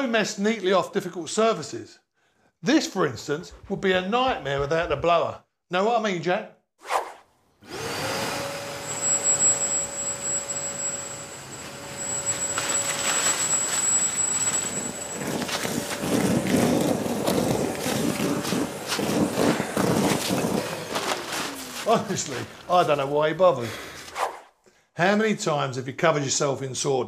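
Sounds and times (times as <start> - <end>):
vacuum blower motor whining: 7.6 - 23.2.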